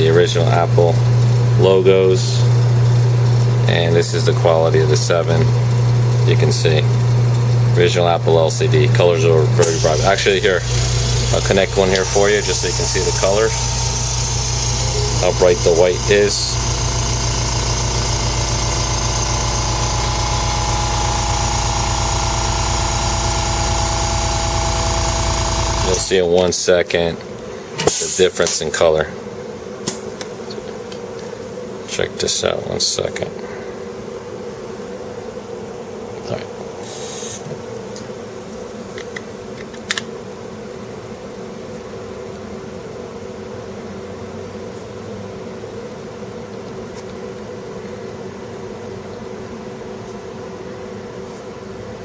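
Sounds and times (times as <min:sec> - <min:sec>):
rapidly pulsing machine hum: 0:00.0 - 0:26.3
steady high tone: 0:08.4 - 0:26.2.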